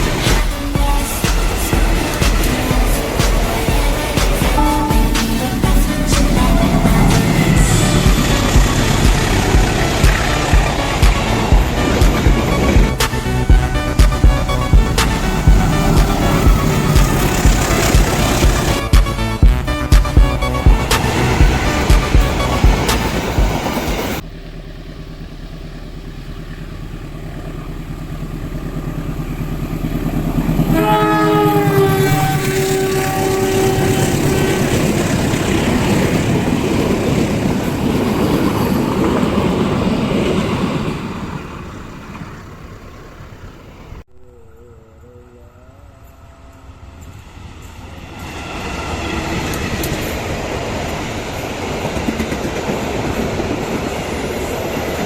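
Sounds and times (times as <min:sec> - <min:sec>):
train horn: 0:00.0 - 0:24.1, 0:30.5 - 0:37.0
train wheels clattering: 0:00.0 - 0:24.2, 0:47.0 - 0:55.0
train rumble: 0:00.0 - 0:55.0.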